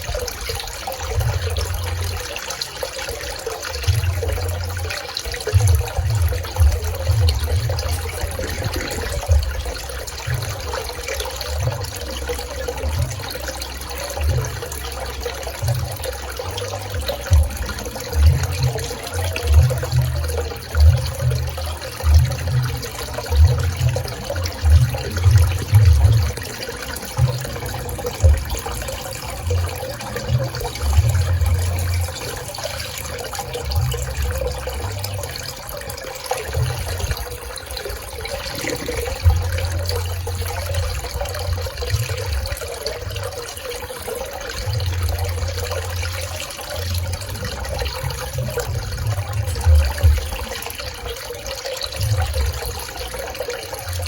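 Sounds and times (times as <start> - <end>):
pool water running and splashing: 0.0 - 54.0
low rumbles: 3.8 - 43.4.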